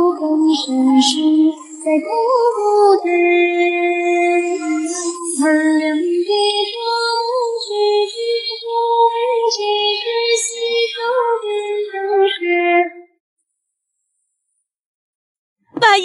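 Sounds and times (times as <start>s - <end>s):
high-pitched voice singing: 2.9s - 6.0s, 15.8s - 16.0s.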